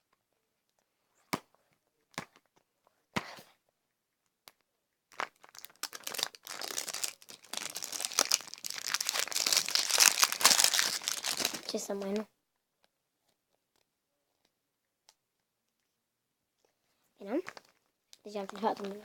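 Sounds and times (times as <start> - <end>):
wrapping crinkling and tearing: 5.1 - 12.2.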